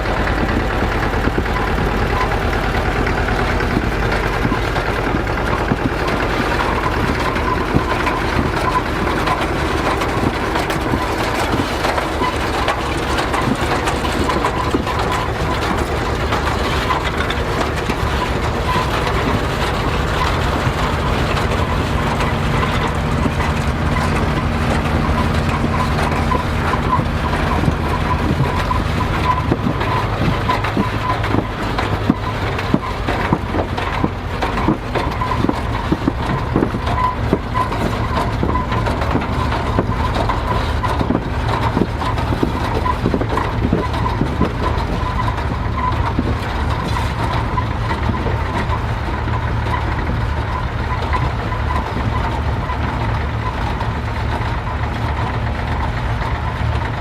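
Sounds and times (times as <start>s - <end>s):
machinery knocks and rattles: 0.0s - 57.0s
tractor engine running: 0.0s - 57.0s.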